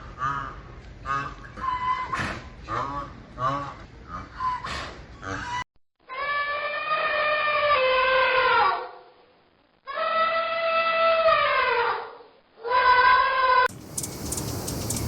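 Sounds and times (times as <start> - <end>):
long drawn-out animal calls: 0.1 - 9.1, 9.8 - 13.7.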